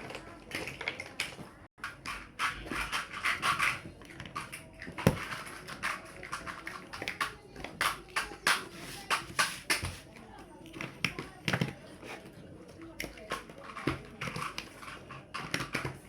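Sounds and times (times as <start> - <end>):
plastic blocks clicking together: 12.7 - 16.0.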